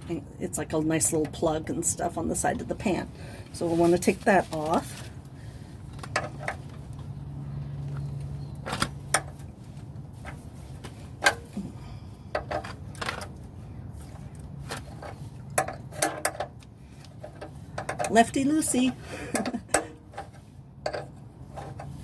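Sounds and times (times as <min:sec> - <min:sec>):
steady low hum: 0:00.0 - 0:22.0
wrench clicks and knocks: 0:15.5 - 0:16.6, 0:17.2 - 0:18.4, 0:19.3 - 0:22.0.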